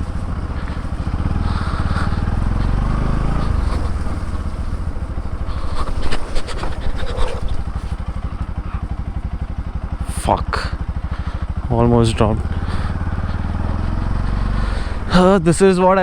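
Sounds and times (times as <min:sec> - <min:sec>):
sharp knocks and scrapes: 0:00.0 - 0:08.2
motorcycle engine running: 0:00.0 - 0:16.0.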